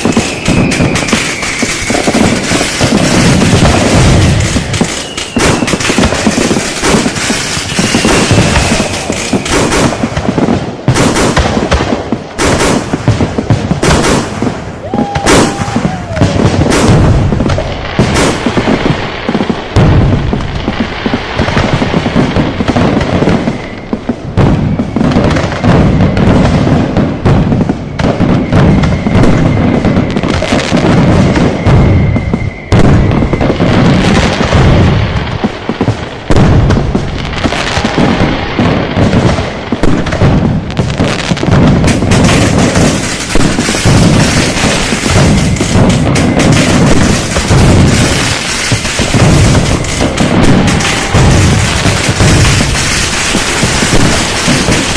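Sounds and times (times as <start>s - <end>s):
fireworks bangs and crackling: 0.0s - 54.9s
faint high whistle tone: 0.1s - 2.4s, 5.0s - 6.0s, 31.4s - 33.9s.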